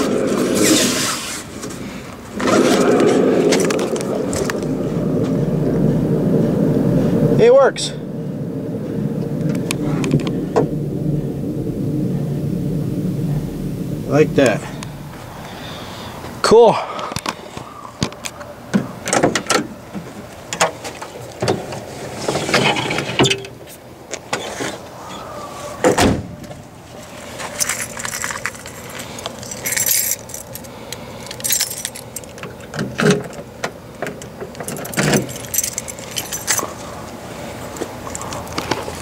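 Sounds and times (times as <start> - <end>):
metal objects clinking and jingling: 27.6 - 32.5, 34.6 - 36.7.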